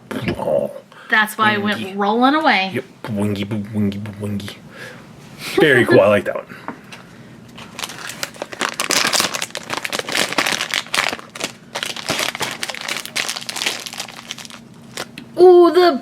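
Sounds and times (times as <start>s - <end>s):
plastic packet crinkling and tearing: 7.6s - 15.2s.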